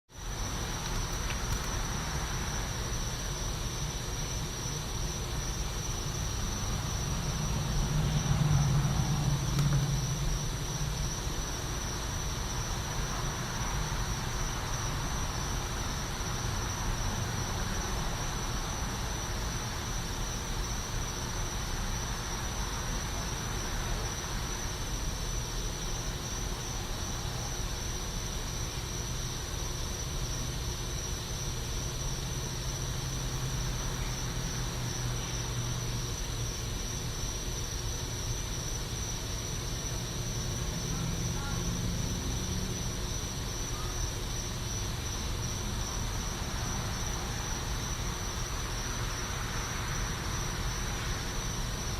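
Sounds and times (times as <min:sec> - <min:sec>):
insects trilling: 0:00.1 - 0:51.9
traffic rumble: 0:00.2 - 0:31.1, 0:39.0 - 0:51.9
vehicle passing: 0:06.6 - 0:11.0.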